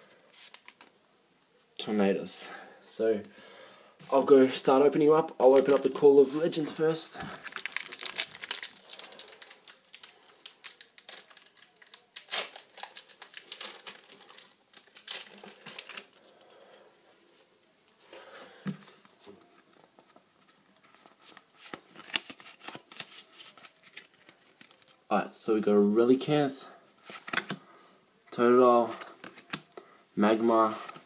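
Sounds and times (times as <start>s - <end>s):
foil wrapper tearing and crinkling: 7.4s - 16.2s.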